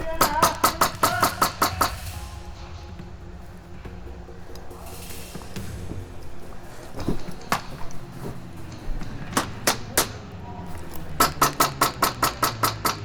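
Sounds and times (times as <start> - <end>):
airsoft rifle shots: 0.0 - 2.4, 9.0 - 13.0.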